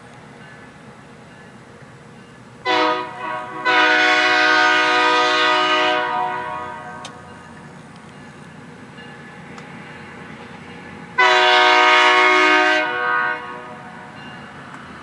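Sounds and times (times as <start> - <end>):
low rumble of train: 0.0 - 15.0
locomotive air horn: 2.7 - 7.2, 11.2 - 14.1.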